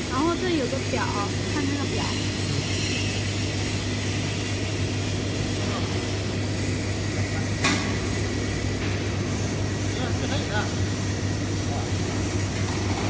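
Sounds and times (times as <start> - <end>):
mixer humming: 0.0 - 13.0
vacuum pump running: 0.0 - 13.0.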